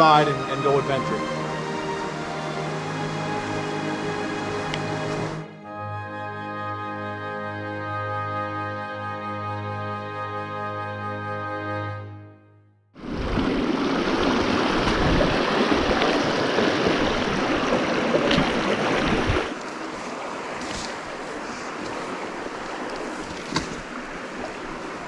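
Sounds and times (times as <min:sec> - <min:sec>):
rushing stream water: 0:00.0 - 0:05.6, 0:13.0 - 0:25.0.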